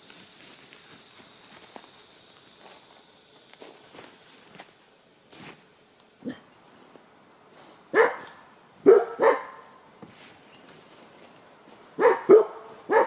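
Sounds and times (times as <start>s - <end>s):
dog barking: 7.9s - 9.7s, 12.0s - 13.0s.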